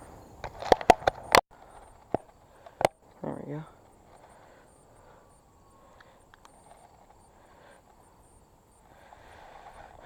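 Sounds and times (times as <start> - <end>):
faint outdoor ambience: 0.0 - 10.0
high-pitched insect chirping: 3.0 - 10.0.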